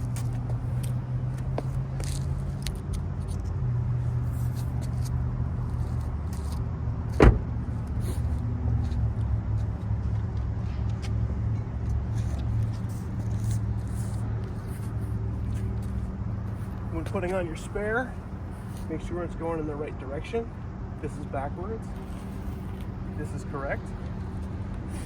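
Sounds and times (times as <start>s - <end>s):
loud thud: 7.2s - 7.5s.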